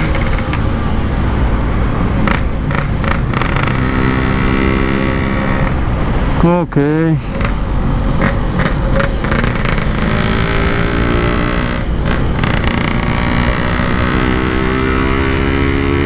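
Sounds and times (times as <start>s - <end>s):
motorcycle engine running: 7.3s - 16.0s.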